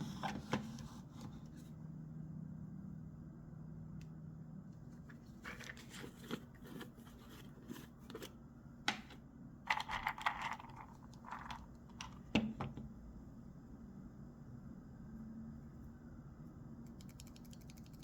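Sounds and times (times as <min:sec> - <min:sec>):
low steady hum: 0:00.0 - 0:18.0.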